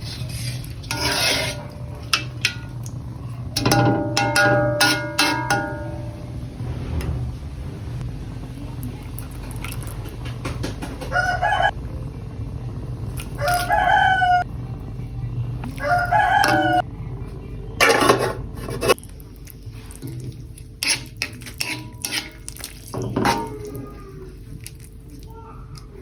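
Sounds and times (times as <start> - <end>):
noisy clatter: 1.6 - 12.6
rooster crowing: 11.0 - 11.8, 13.3 - 14.5, 15.7 - 16.8.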